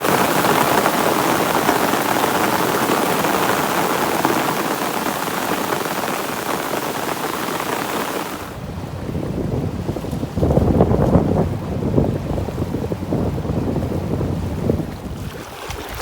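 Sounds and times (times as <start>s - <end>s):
steady rain falling: 0.0s - 11.4s.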